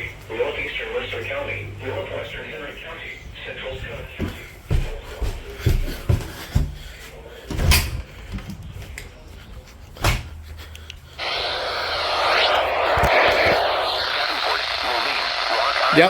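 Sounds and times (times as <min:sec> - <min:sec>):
steady rushing noise: 0:11.2 - 0:16.0.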